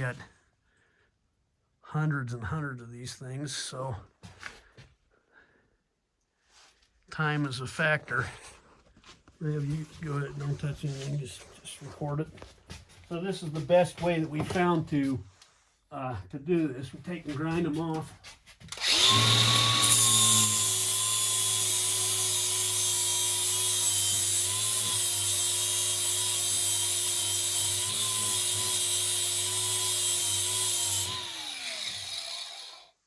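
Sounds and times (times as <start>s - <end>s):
power grinder grinding rivets: 18.7s - 33.0s.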